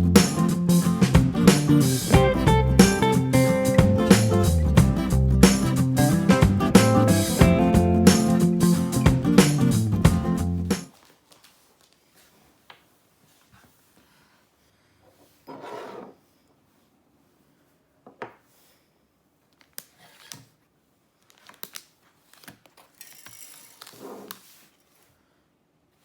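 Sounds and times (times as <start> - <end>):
packaging rustling: 10.9 - 12.4, 21.2 - 25.0.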